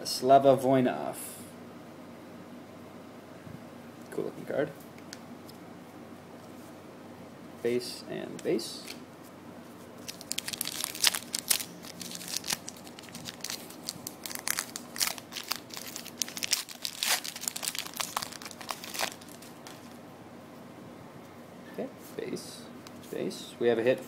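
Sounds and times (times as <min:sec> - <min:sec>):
wrapper crinkling and tearing: 0:10.0 - 0:20.0.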